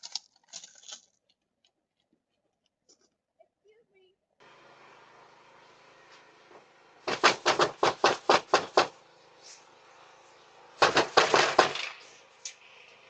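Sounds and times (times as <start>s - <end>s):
loud knocking on a door: 7.1s - 9.0s, 10.8s - 11.8s.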